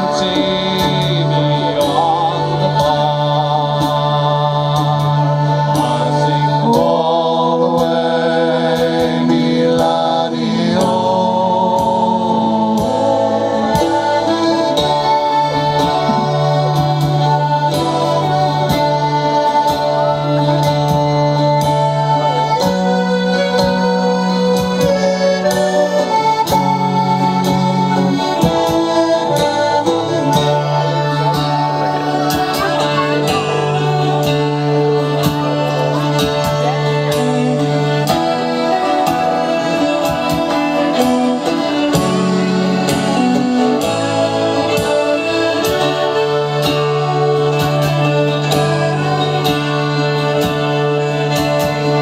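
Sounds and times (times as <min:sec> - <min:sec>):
accordion band folk tune: 0:00.0 - 0:52.0.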